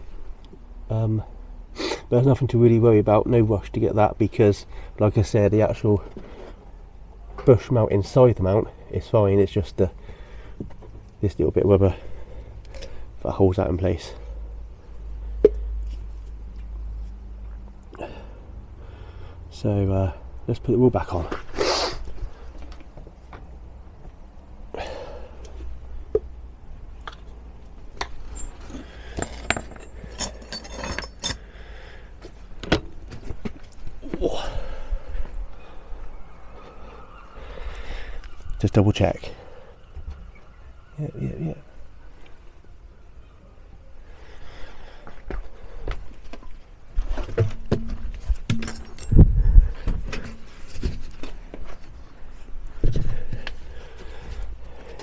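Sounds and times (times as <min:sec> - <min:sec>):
metal tools clinking: 0:28.0 - 0:31.4, 0:47.7 - 0:51.3
metallic jangling: 0:28.2 - 0:31.4, 0:48.5 - 0:51.2.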